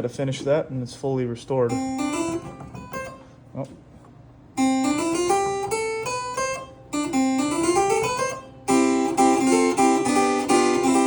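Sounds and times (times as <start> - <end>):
harpsichord playing: 1.7 - 3.2, 4.6 - 11.0.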